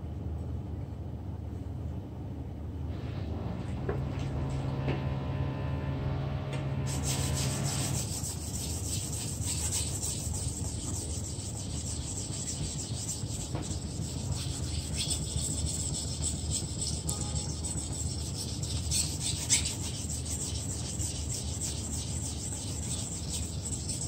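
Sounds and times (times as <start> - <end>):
low steady hum: 0.0 - 24.0
knife scraping on whetstone: 6.9 - 24.0.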